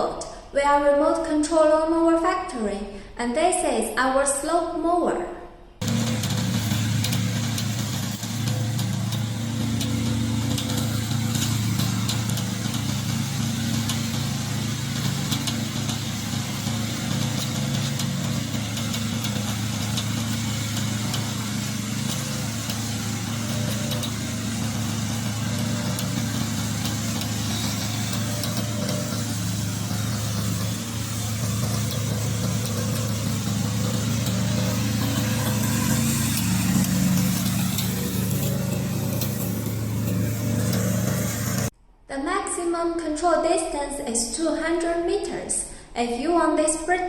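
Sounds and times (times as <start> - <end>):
mower engine running steadily: 5.8 - 41.7.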